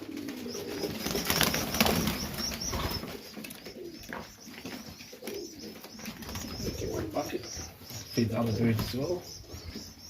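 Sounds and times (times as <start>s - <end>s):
pigeons flapping wings: 0.0s - 3.7s, 4.6s - 7.2s.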